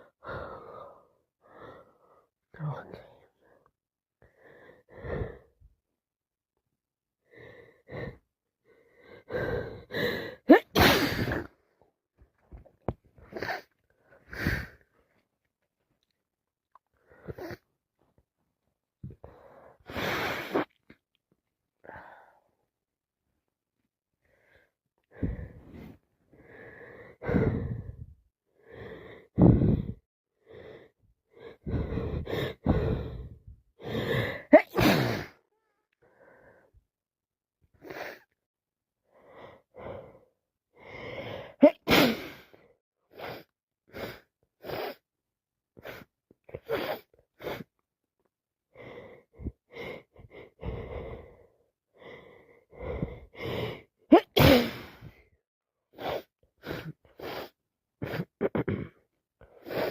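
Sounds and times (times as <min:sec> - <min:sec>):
person sneezing: 0:10.5 - 0:11.5, 0:34.6 - 0:35.4, 0:41.6 - 0:42.4, 0:54.1 - 0:55.0.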